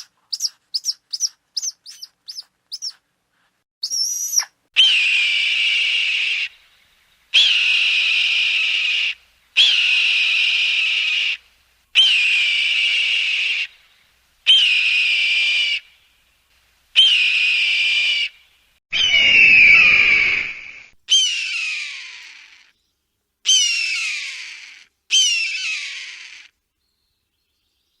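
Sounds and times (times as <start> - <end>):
hawk screaming: 18.9 - 22.7.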